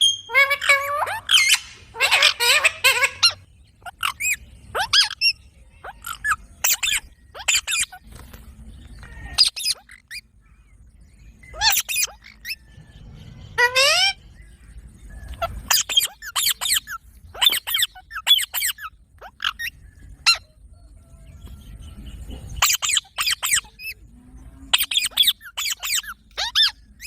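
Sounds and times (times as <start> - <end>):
parrot screeching and squawking: 0.0 - 8.0, 9.0 - 10.3, 11.5 - 12.6, 13.6 - 14.2, 15.4 - 20.5, 22.6 - 24.0, 24.7 - 27.0.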